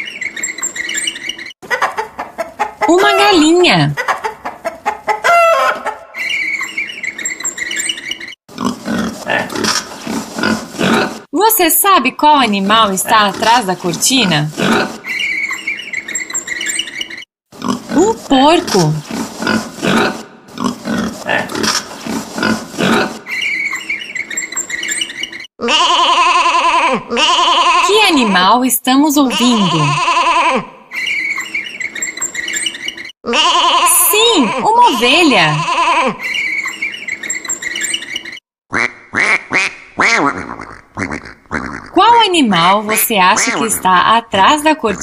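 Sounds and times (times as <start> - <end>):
chickens clucking: 1.6 - 3.4, 4.0 - 6.8
pig grunting: 8.5 - 11.3, 14.5 - 15.0, 17.6 - 23.2, 40.2 - 42.0.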